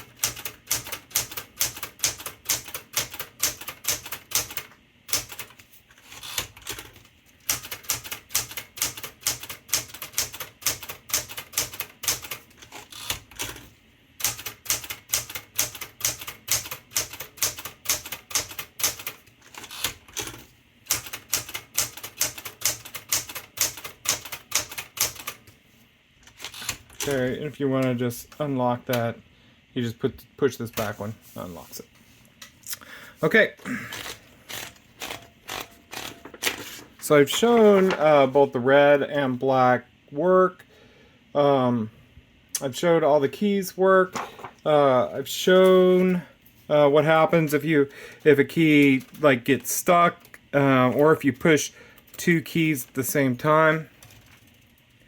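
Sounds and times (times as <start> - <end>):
manual typewriter typing: 0.0 - 25.5, 26.2 - 27.9, 33.9 - 38.0, 50.9 - 55.0.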